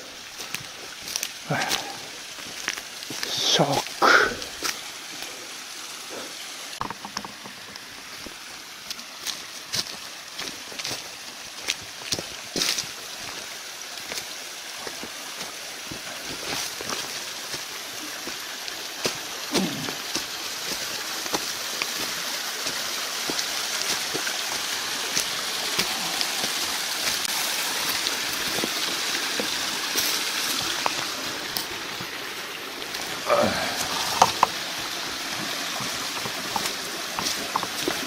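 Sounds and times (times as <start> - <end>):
river water rushing: 0.0 - 38.0
footsteps on trail: 0.2 - 5.3, 6.8 - 38.0
person sighing or grunting: 1.4 - 2.1, 3.3 - 4.6, 19.5 - 20.0, 25.8 - 26.5, 33.1 - 34.5.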